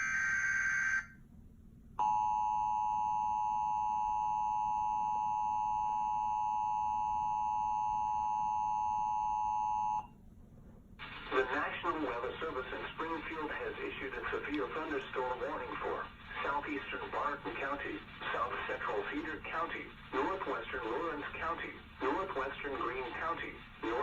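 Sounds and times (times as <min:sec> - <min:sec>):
two-tone emergency alert signal: 0:00.0 - 0:01.2, 0:02.0 - 0:10.1
digital header burst: 0:11.0 - 0:24.0.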